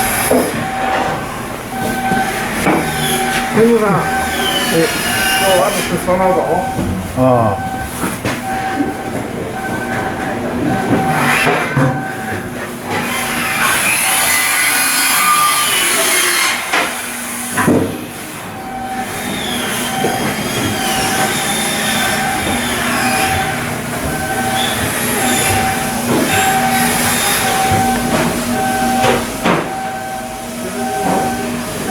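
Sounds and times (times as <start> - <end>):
metallic squeals: 0.0 - 6.8, 18.6 - 31.9
machinery with pulsing tone: 0.0 - 31.9.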